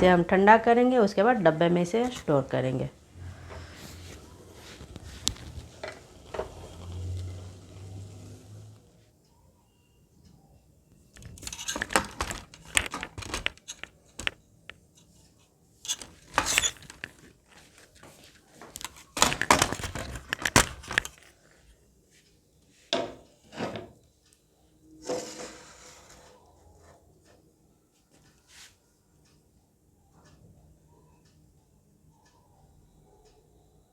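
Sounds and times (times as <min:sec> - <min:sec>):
utensil scraping a cooking pan: 0:03.2 - 0:08.8, 0:25.0 - 0:27.0.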